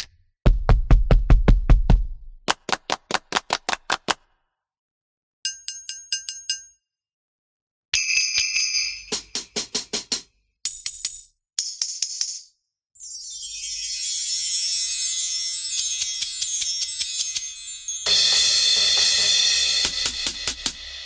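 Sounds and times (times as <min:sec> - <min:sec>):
tambourine jingles: 0:08.0 - 0:09.9, 0:13.6 - 0:20.7
hiss: 0:18.1 - 0:21.0.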